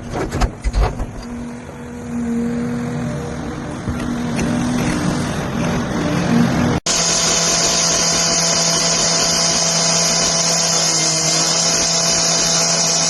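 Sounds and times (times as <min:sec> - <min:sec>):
power tool motor running: 0:06.9 - 0:13.0.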